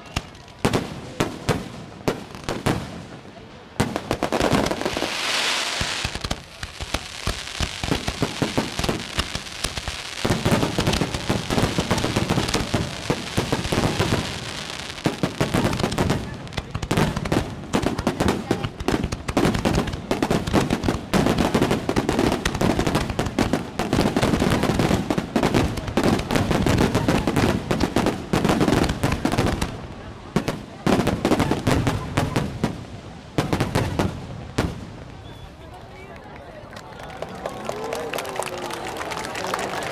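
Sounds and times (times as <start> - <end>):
fireworks bangs and crackling: 0.0 - 36.1.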